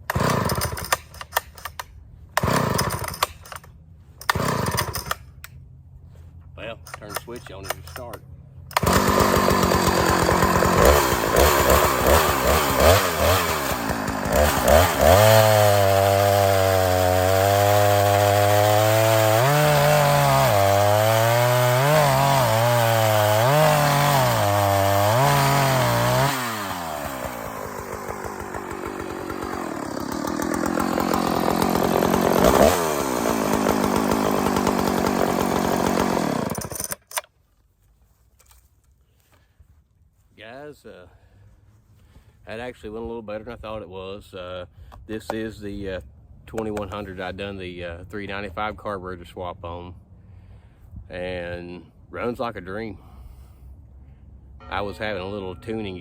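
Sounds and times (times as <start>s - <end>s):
chainsaw cutting wood: 0.0s - 5.6s, 6.9s - 37.3s.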